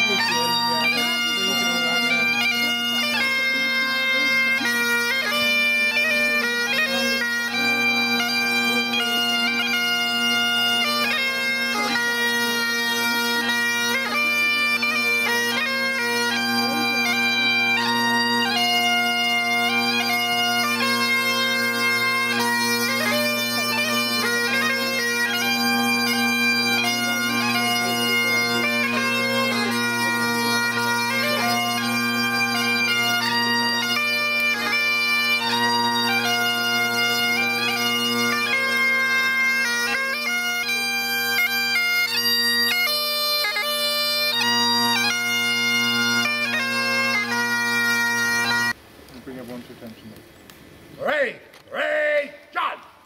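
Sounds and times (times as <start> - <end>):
bagpipes playing a tune: 0.0 - 48.8.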